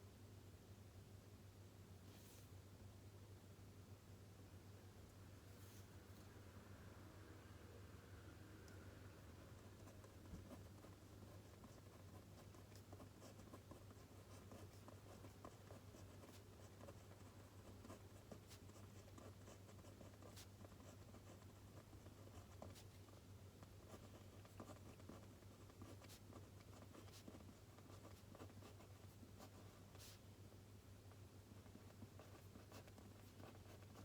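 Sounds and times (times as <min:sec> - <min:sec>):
low room hum: 0:00.0 - 0:34.0
pencil writing on paper: 0:09.6 - 0:30.2, 0:31.6 - 0:34.0.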